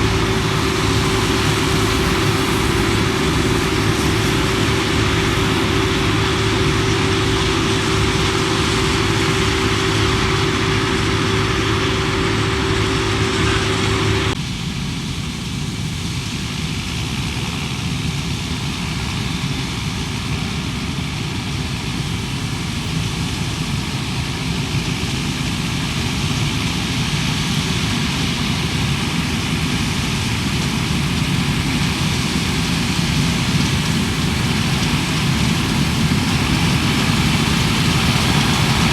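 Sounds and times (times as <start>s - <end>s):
machine whine: 0.0s - 14.4s
diesel engines running: 0.0s - 15.6s, 16.2s - 38.9s.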